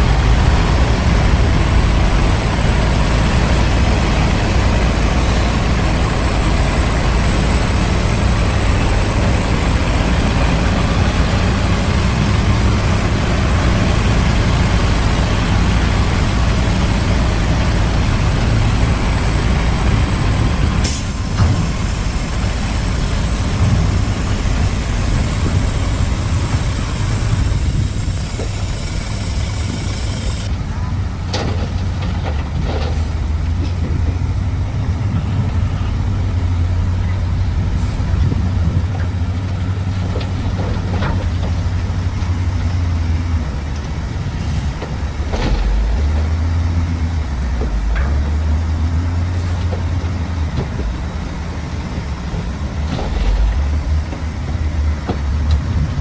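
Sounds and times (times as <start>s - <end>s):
construction machine engine running: 0.0s - 56.0s
clanks and knocks: 40.0s - 41.8s.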